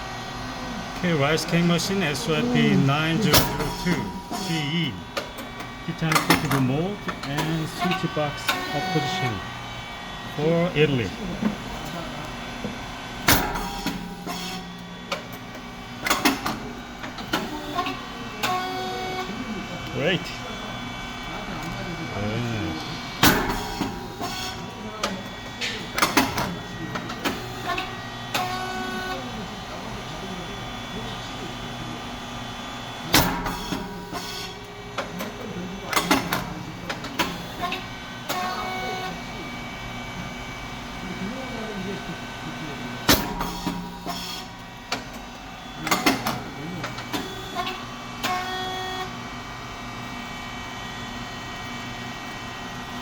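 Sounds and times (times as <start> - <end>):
steady machine hum: 0.0 - 48.3
machine bangs and clanks: 3.3 - 4.5, 5.1 - 9.0, 13.2 - 18.0, 23.2 - 24.6, 33.1 - 35.1, 43.0 - 45.2, 45.8 - 48.4
machine clacks and pops: 6.1 - 8.0, 45.8 - 47.3.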